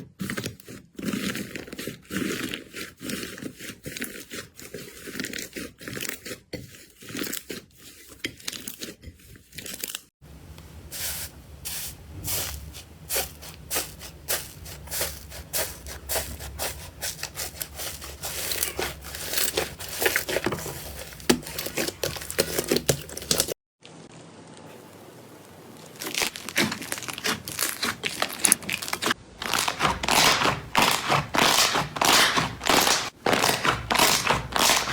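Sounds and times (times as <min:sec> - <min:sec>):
slime crackling and popping: 0:15.6 - 0:23.6, 0:25.8 - 0:34.9.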